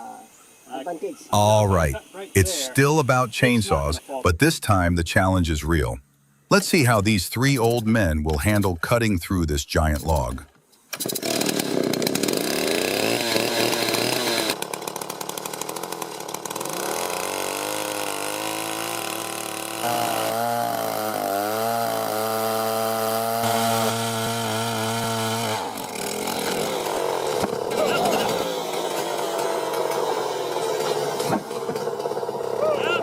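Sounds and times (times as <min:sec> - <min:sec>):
chainsaw cutting log: 0:10.9 - 0:33.0.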